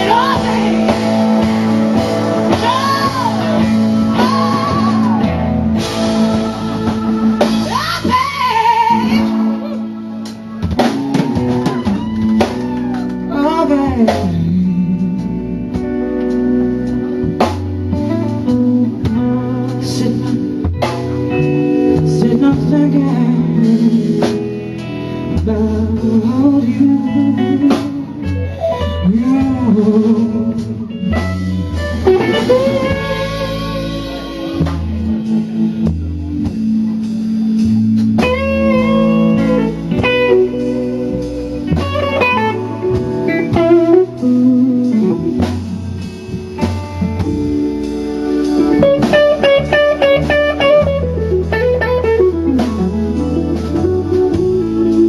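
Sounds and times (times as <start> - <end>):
blues band playing: 0.0 - 55.0
guitar bending lead lines: 0.0 - 55.0.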